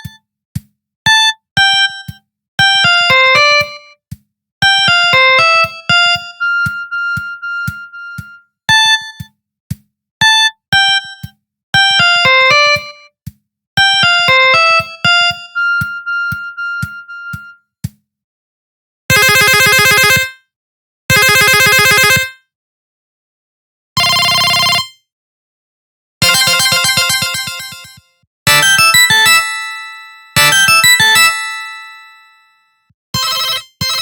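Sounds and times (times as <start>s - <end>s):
polyphonic ringtone melody: 2.8s - 3.9s, 4.7s - 9.3s, 11.8s - 13.1s, 13.8s - 17.6s, 19.2s - 20.3s, 24.0s - 24.9s, 26.2s - 32.6s, 33.2s - 34.0s.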